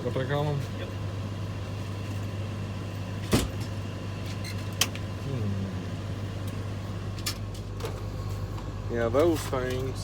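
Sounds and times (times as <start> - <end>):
low machine hum: 0.0 - 10.0.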